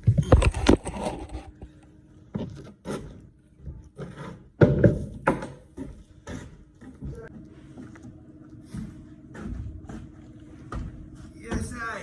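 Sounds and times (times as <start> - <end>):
wood knocking and scraping: 0.0 - 1.8.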